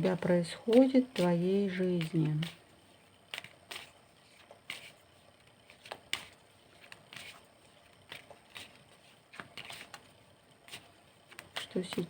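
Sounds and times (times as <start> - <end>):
cards being shuffled: 0.0 - 12.0.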